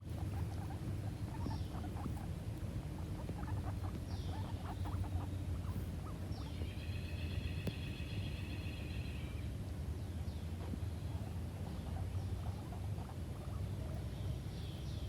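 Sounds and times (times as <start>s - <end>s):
guinea pig squealing: 0.0s - 7.3s, 11.2s - 14.2s
guinea pigs squeaking: 0.0s - 9.5s, 10.6s - 15.0s
low steady rumble: 0.0s - 15.0s.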